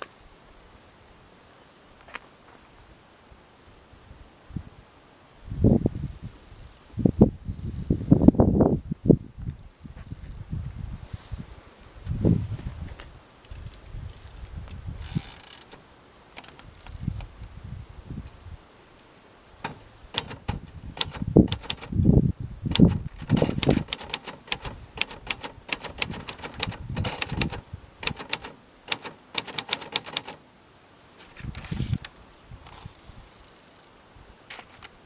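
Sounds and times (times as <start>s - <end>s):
typewriter mechanical noise: 15.0s - 15.8s, 16.4s - 16.7s, 19.6s - 22.0s, 22.7s - 30.4s
typewriter key strikes: 19.6s - 22.0s, 22.7s - 30.4s.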